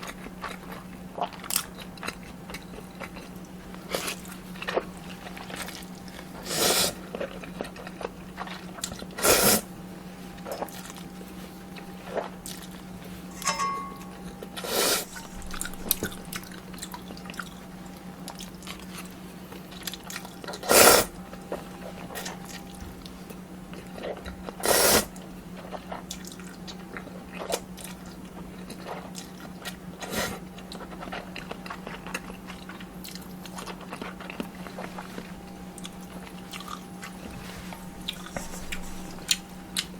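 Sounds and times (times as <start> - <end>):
wet chewing: 0.0 - 9.6, 15.2 - 20.7, 21.4 - 39.9
noodle slurps: 6.4 - 7.0, 9.2 - 9.6, 20.6 - 21.1, 24.6 - 25.1
low hum: 13.3 - 16.9.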